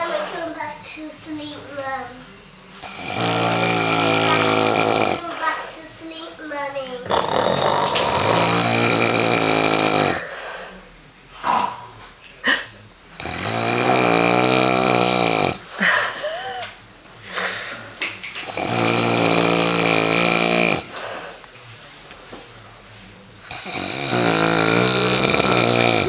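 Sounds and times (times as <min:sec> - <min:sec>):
man snoring loudly: 0:02.8 - 0:05.6, 0:07.0 - 0:10.8, 0:13.2 - 0:16.0, 0:18.4 - 0:21.2, 0:23.4 - 0:26.0.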